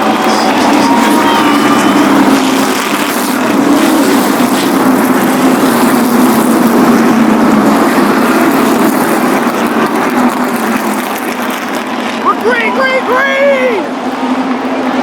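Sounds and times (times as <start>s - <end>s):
race car engines droning: 0.0s - 15.0s.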